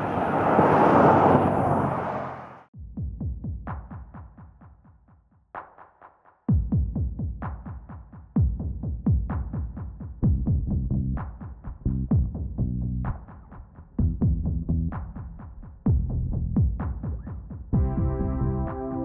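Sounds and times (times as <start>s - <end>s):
deep kick drums: 2.8s - 4.6s, 6.5s - 18.4s.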